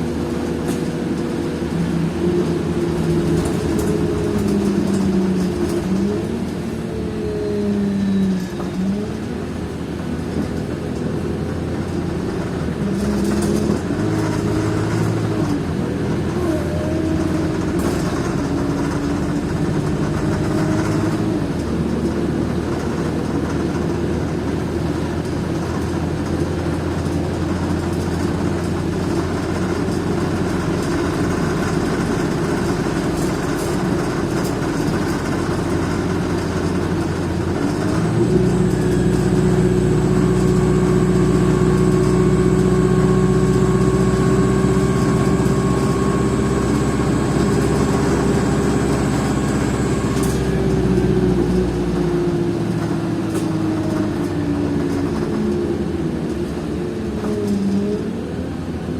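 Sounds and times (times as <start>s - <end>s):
bus engine running: 0.0s - 58.9s.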